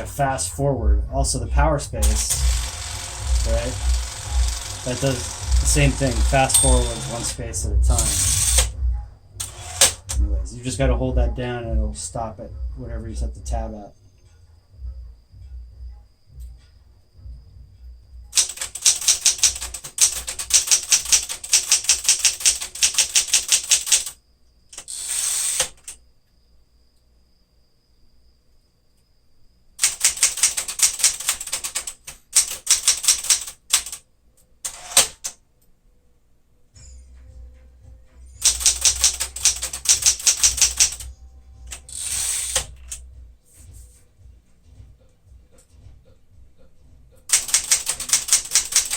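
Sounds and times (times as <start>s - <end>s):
typewriter keystrokes: 2.0s - 7.4s, 18.4s - 24.2s, 29.8s - 34.0s, 34.7s - 35.4s, 38.4s - 41.1s, 47.3s - 48.9s.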